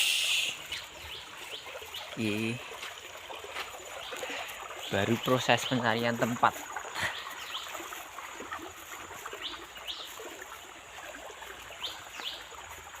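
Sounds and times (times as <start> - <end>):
river water flowing: 0.0 - 13.0.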